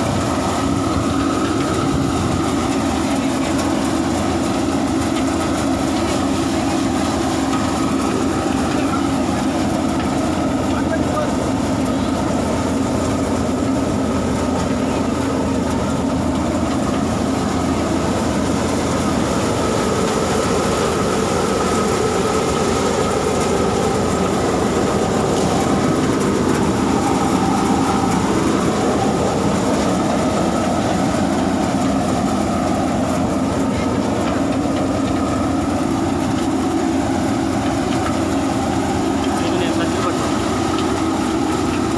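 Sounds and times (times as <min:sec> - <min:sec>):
diesel tractor engine running: 0:00.0 - 0:41.9
thresher machinery churning: 0:00.0 - 0:41.9.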